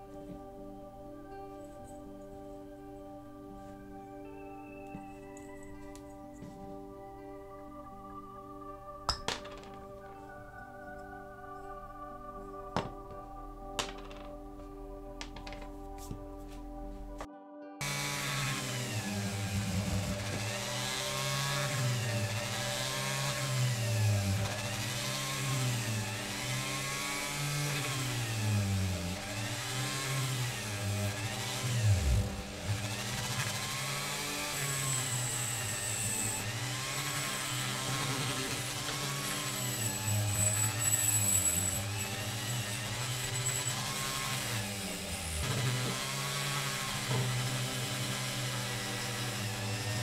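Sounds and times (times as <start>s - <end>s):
power tool motor whine: 17.8s - 50.0s.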